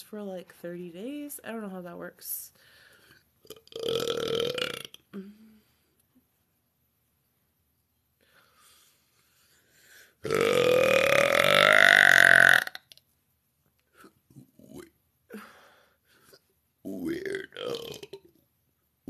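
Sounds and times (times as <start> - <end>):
woman burping: 3.4 - 5.5, 10.2 - 12.8.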